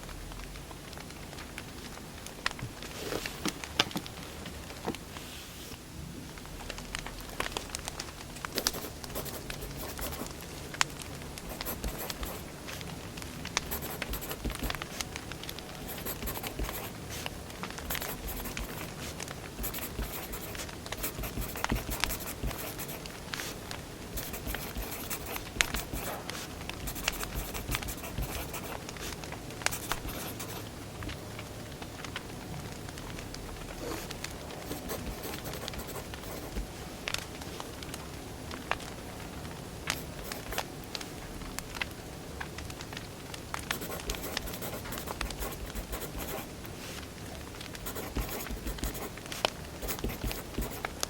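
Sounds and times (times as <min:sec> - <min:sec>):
soft hiss: 0:00.0 - 0:34.8
firewood crackling: 0:00.3 - 0:04.8, 0:10.3 - 0:11.4, 0:12.5 - 0:13.6, 0:18.8 - 0:19.6, 0:23.0 - 0:24.1, 0:28.8 - 0:29.7.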